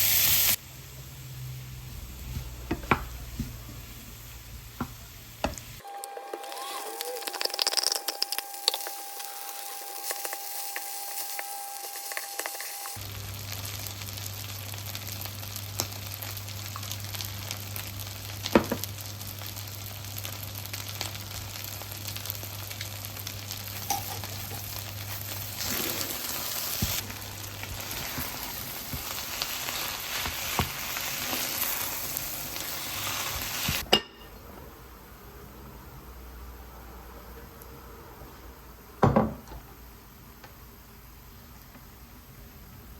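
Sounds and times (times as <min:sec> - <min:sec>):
food sizzling in a pan: 0:00.0 - 0:00.6, 0:01.4 - 0:33.8
utensil stirring clicks: 0:06.4 - 0:09.0.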